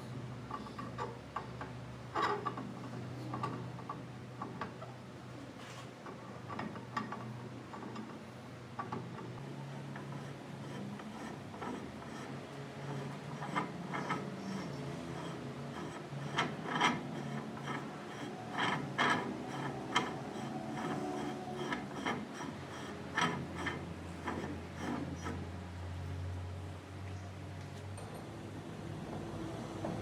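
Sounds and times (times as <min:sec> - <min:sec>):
clicks and scraping of hand work: 0:00.4 - 0:25.8.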